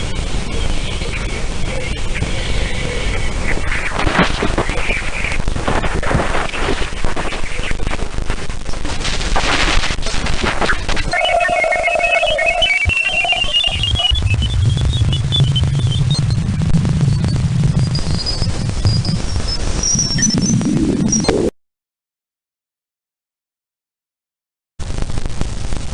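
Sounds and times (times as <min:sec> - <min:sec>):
dense crackling static: 0:00.0 - 0:21.5, 0:24.8 - 0:25.9
low hum: 0:00.0 - 0:21.5
steady mid tone: 0:00.0 - 0:21.5
short chirping tones: 0:11.1 - 0:16.0.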